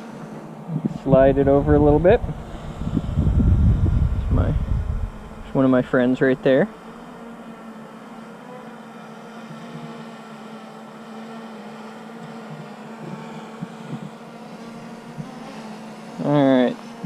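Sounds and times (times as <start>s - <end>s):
steady buzzing drone hum: 0.0s - 17.0s
faint knocks of hive frames: 6.7s - 10.4s, 11.7s - 16.1s.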